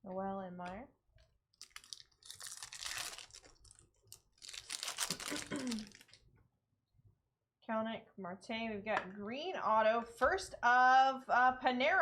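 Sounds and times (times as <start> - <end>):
plastic wrappers crinkling: 1.5 - 6.3.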